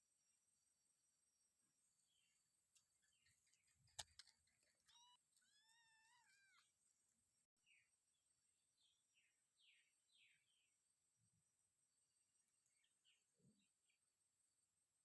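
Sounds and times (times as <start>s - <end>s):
faint cat meows: 4.9s - 6.7s.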